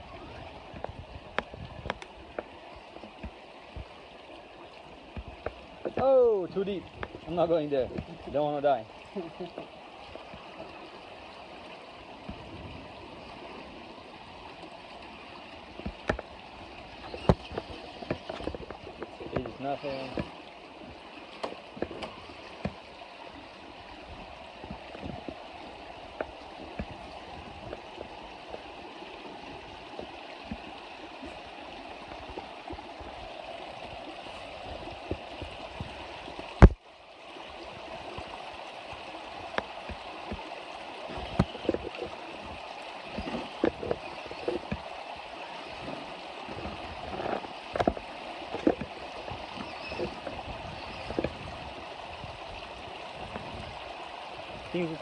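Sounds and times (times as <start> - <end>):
creek water running over rocks: 0.0 - 55.0.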